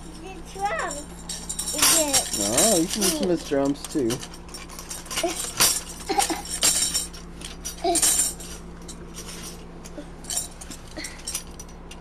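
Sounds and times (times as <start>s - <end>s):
tambourine jingling: 0.0s - 9.6s.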